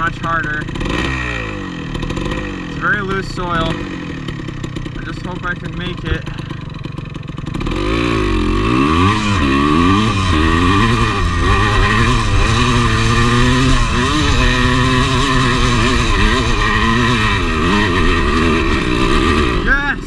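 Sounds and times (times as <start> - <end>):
dirt bike engine revving: 0.0 - 20.0.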